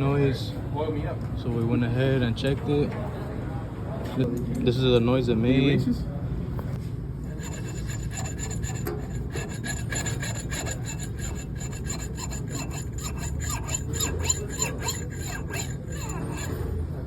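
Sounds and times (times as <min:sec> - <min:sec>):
compressor harsh scraping: 0:07.2 - 0:17.0.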